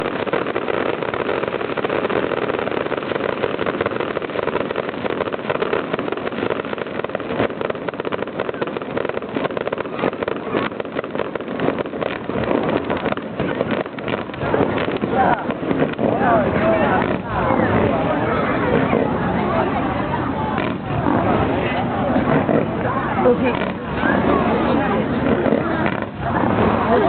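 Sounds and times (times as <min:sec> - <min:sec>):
fireworks barrage: 0:00.0 - 0:27.0.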